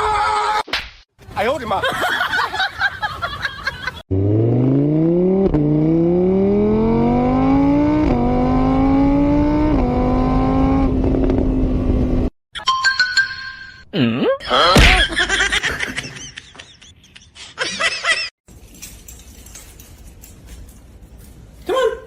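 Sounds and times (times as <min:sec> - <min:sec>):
car engine accelerating: 0:04.1 - 0:12.3.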